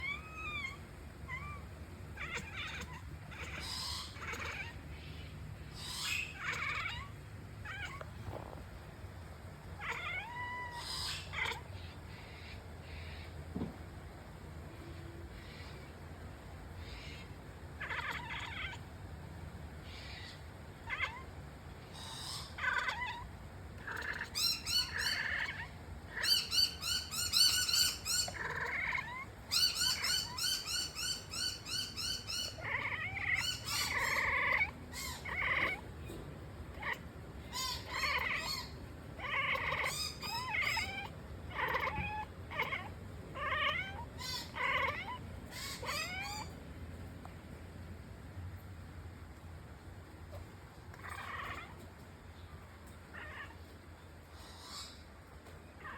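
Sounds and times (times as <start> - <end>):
cat chattering: 0.0 - 8.9, 9.7 - 13.4, 16.7 - 18.9, 19.8 - 46.6, 50.3 - 51.8.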